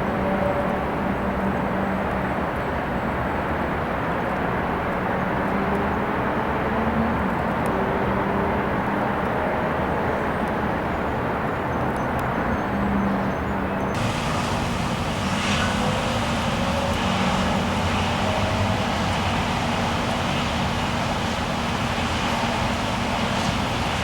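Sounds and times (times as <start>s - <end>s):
engine drone: 14.0s - 24.0s.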